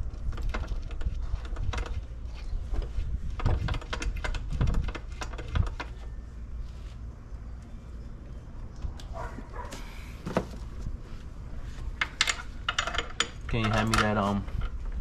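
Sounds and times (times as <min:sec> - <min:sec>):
metal tools clattering: 0:12.0 - 0:14.5.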